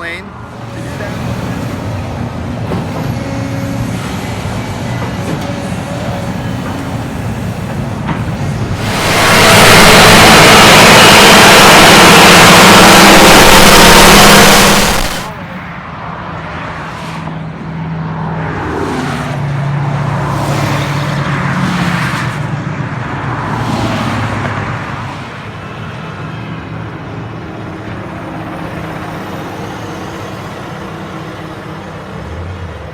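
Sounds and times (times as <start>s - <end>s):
road noise: 0.0s - 32.9s
vehicles passing: 8.6s - 25.4s.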